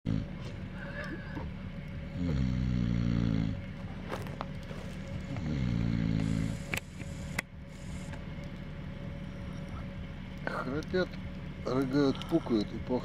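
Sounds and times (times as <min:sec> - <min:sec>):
man snoring: 0:00.1 - 0:00.3, 0:02.2 - 0:03.6, 0:05.3 - 0:06.7.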